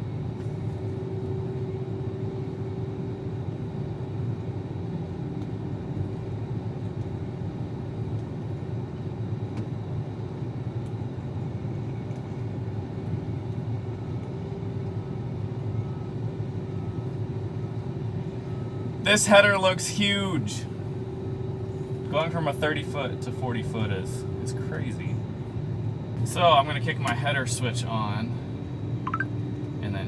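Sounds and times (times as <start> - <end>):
combine harvester engine rumbling: 16.7 - 25.6.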